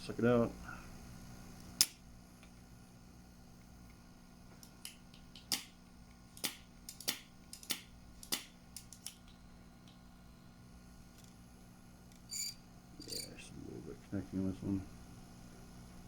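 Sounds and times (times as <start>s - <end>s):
steady low hum: 0.0s - 16.0s
solder sucker clicking and snapping: 4.6s - 10.0s.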